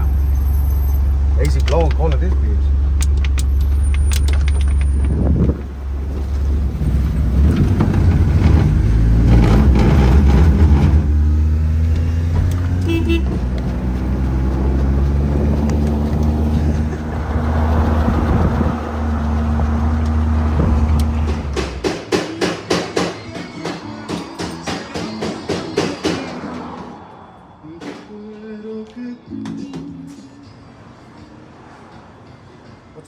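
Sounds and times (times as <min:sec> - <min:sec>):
truck engine idling: 0:00.0 - 0:22.2.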